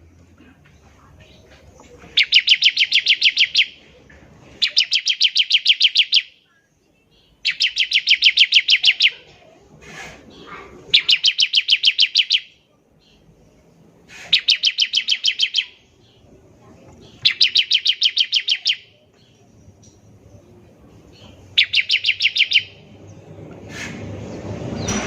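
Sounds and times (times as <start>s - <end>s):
bird singing rattling trills: 2.1s - 3.8s, 4.6s - 6.4s, 7.0s - 9.3s, 10.9s - 16.4s, 17.0s - 23.6s.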